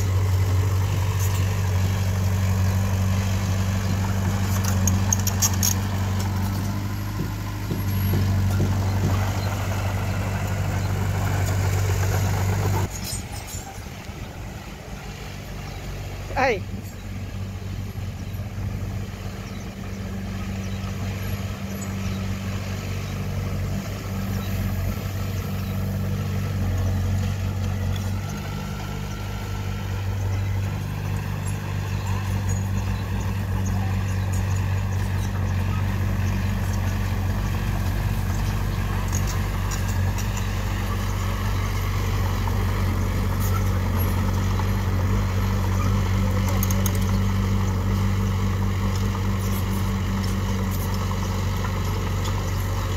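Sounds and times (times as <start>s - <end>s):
diesel engine humming: 0.0s - 52.9s.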